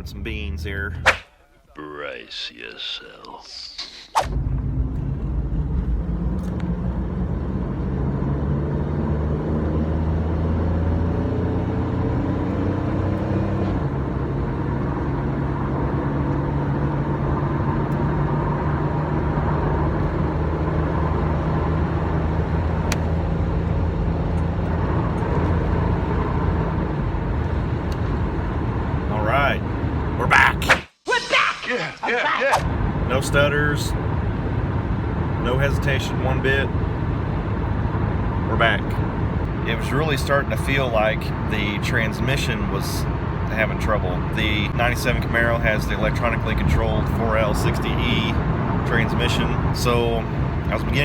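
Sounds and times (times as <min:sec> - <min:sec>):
car engine at full throttle: 0:00.0 - 0:01.2, 0:04.2 - 0:30.7, 0:32.6 - 0:51.0
transmission upshifting: 0:00.0 - 0:01.9.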